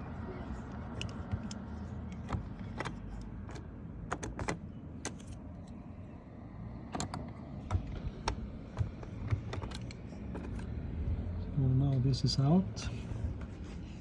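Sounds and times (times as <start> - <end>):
low steady hum: 0.0 - 14.0
metal parts clicking and tapping: 0.8 - 5.4, 7.0 - 10.7.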